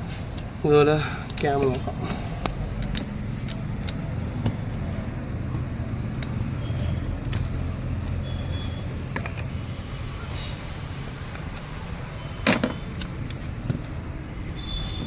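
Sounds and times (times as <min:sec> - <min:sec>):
motor vehicle rumbling: 0:00.0 - 0:15.0
light clicks and taps: 0:01.2 - 0:09.5.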